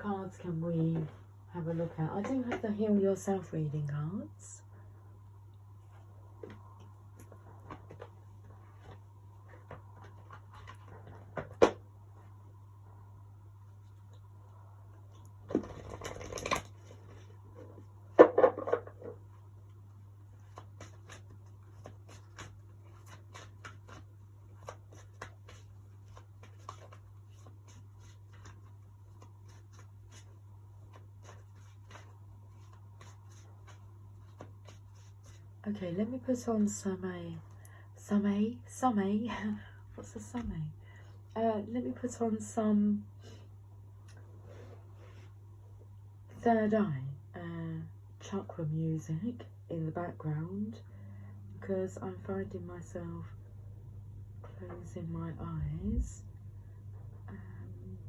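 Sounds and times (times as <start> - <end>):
low electrical hum: 0.0 - 58.0
cards clicking and tapping: 20.5 - 30.2, 30.9 - 35.4.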